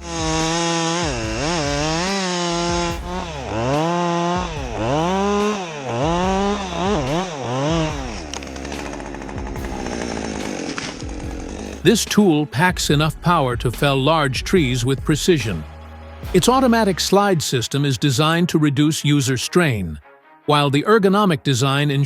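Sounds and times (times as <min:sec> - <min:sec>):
chainsaw engine revving: 0:00.0 - 0:12.3.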